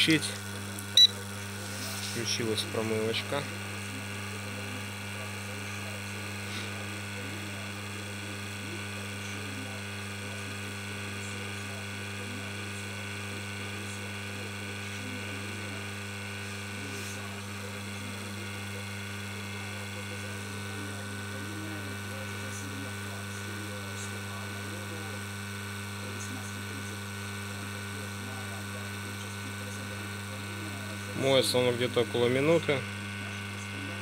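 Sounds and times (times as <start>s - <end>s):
pump humming: 0.0s - 11.1s.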